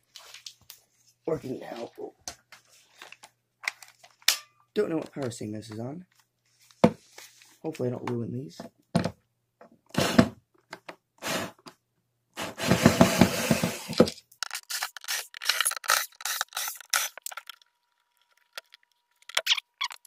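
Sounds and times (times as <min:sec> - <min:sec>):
scraping and cracking of hard parts: 0:12.9 - 0:20.0.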